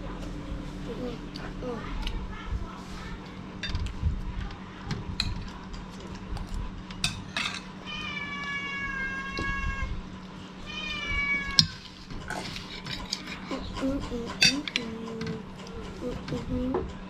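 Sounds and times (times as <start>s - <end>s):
cutlery and dishes clinking: 7.0s - 7.8s, 11.6s - 15.4s
cat meowing: 7.8s - 10.0s, 10.6s - 11.8s.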